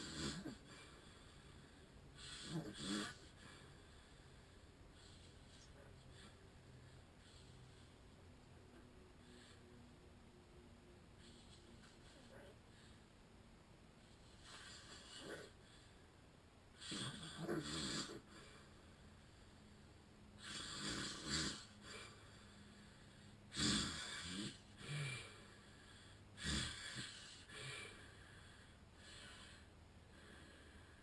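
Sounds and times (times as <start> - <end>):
man snoring: 0.0 - 1.0, 2.2 - 3.6, 14.4 - 15.6, 16.8 - 18.5, 20.4 - 22.2, 23.5 - 25.6, 26.4 - 28.2.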